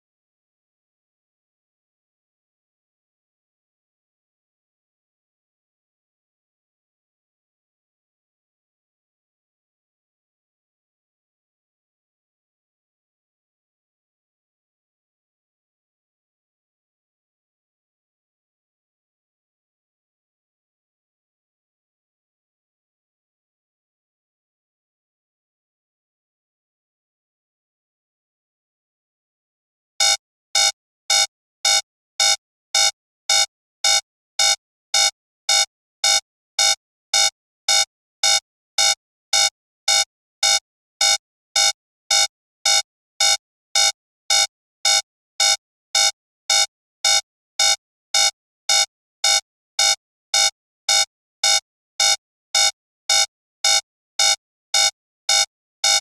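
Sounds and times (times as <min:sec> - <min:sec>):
alarm clock electronic beeps: 0:30.0 - 0:56.0.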